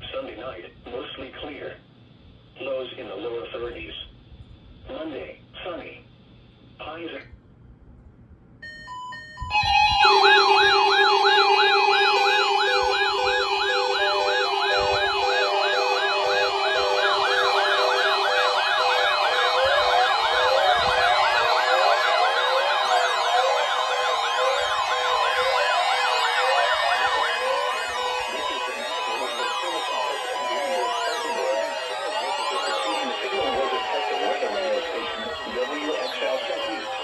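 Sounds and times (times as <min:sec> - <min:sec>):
short beeps: 0:08.6 - 0:20.2
pulsing beep: 0:08.6 - 0:37.0
steady alarm tones: 0:08.6 - 0:37.0
warbling siren alarms: 0:08.6 - 0:37.0.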